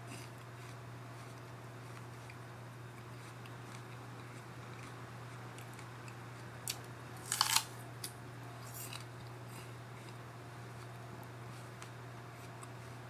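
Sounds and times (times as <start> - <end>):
steady low hum: 0.0 - 13.0
apple bite crunch: 3.0 - 11.0.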